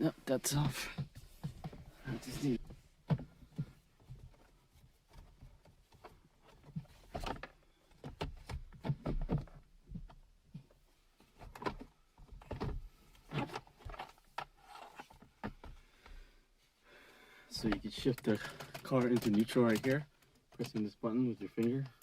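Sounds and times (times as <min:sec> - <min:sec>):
plastic trim clicks and knocks: 0:18.2 - 0:20.9.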